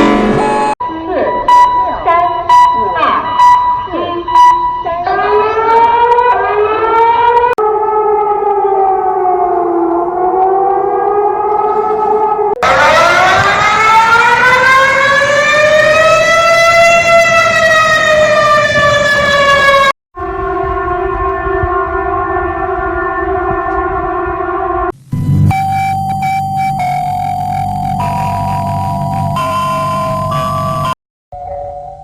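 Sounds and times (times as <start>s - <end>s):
warning sirens wailing: 0.0s - 31.0s.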